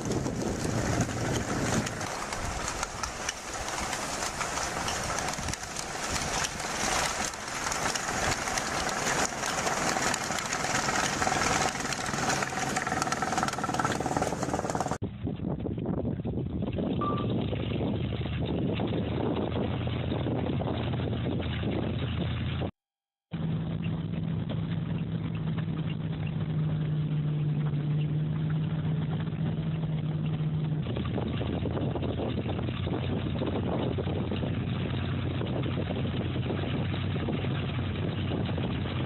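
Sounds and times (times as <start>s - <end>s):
heavy vehicle engine running: 0.0s - 15.0s, 23.4s - 39.0s.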